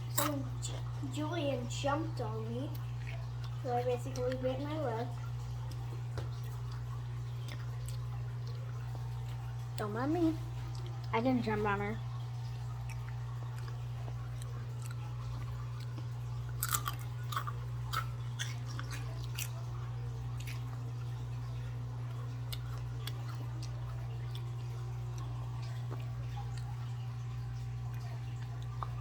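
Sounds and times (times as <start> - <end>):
steady low hum: 0.0 - 29.0
person chewing crunchy chips: 2.7 - 4.4, 5.6 - 9.9, 12.6 - 29.0.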